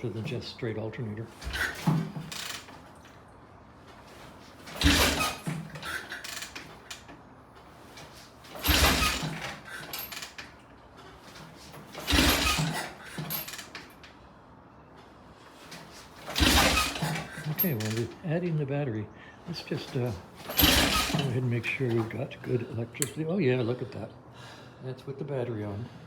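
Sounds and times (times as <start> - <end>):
kickstart clunk: 1.3 - 3.2, 3.8 - 14.2, 15.5 - 18.2, 19.8 - 23.2.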